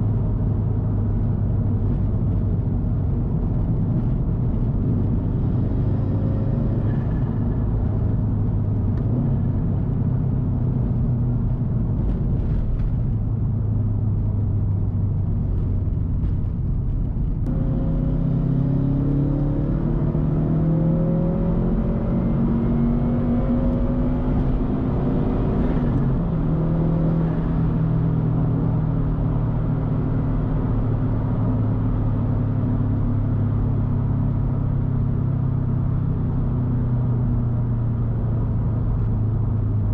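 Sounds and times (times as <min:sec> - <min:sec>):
car engine droning: 0:00.0 - 0:39.9.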